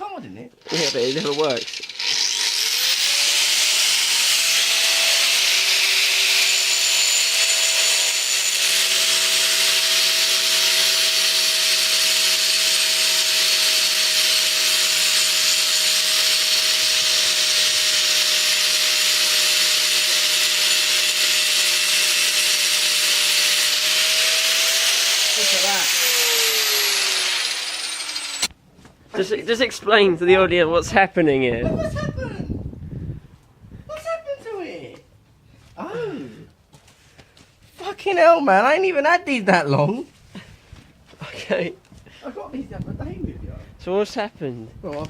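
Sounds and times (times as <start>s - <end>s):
angle grinder grinding metal: 0.6s - 28.6s.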